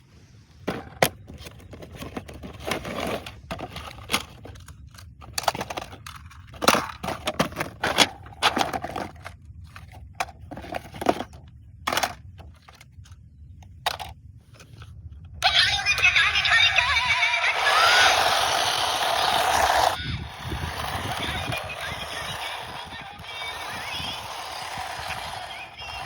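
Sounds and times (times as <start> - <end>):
cardboard and plastic rustling: 0.0 - 13.2.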